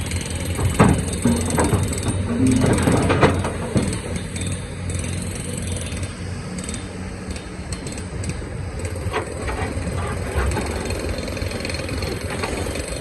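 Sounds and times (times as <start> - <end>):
excavator engine running: 0.0 - 13.0
sharp knocks and scrapes: 0.4 - 4.6, 8.8 - 13.0.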